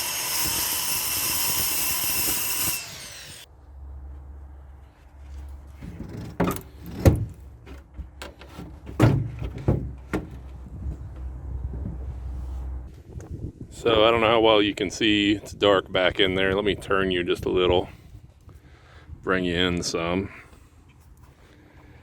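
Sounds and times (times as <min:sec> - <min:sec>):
wooden boards knocking: 0:08.8 - 0:10.5.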